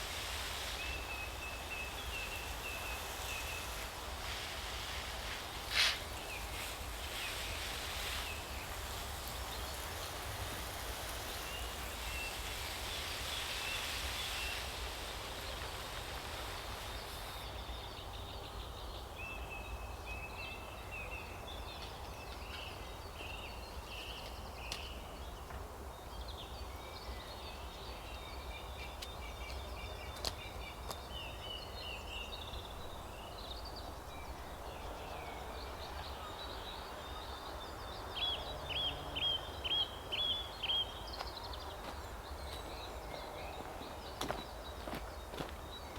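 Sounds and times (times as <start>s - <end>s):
background hiss: 0.0s - 45.9s
birds chirping and twittering: 28.4s - 45.9s.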